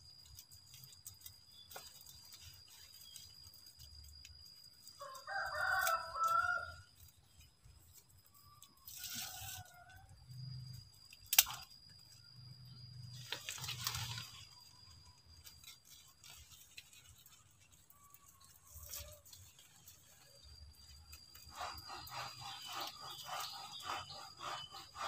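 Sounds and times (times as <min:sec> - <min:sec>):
rooster crowing: 0:05.0 - 0:06.9.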